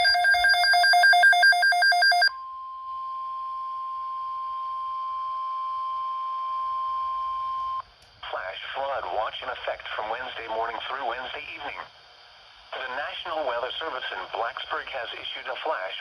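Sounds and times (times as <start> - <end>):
steady single-pitch alarm tone: 0.0 - 7.8.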